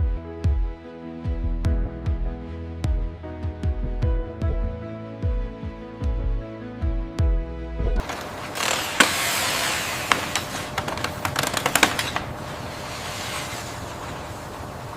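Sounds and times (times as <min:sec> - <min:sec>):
music: 0:00.0 - 0:08.0
machinery hum: 0:07.9 - 0:14.9.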